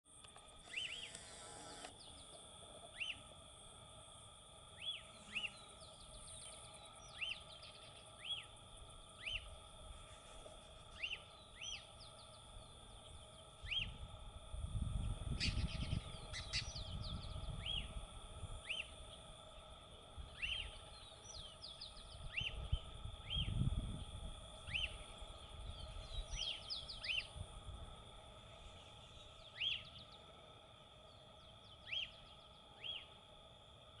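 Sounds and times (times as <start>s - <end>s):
bird calling clear note: 0.6s - 3.3s, 4.8s - 8.5s.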